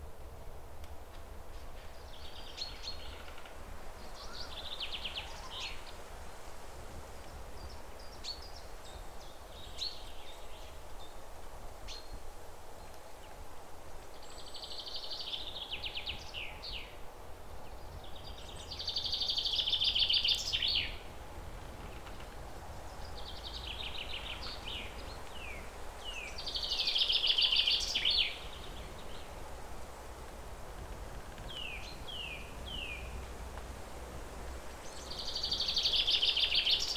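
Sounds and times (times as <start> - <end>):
songbirds trilling: 17.6 - 29.5, 31.4 - 33.4, 34.7 - 36.9.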